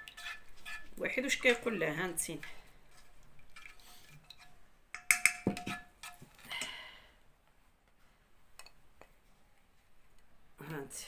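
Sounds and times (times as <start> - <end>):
kitchenware clinking and clattering: 0.0 - 6.5.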